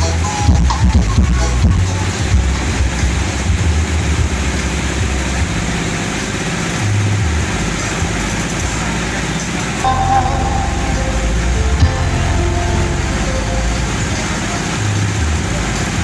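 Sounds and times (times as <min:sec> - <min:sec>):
loud bass-heavy music: 0:00.0 - 0:16.0.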